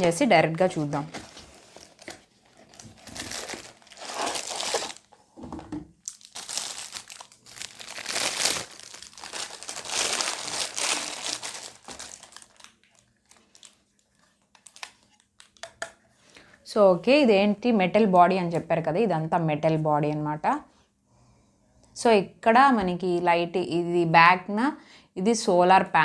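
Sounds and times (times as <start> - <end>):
packaging crinkling and tearing: 1.0 - 5.1, 6.0 - 15.6.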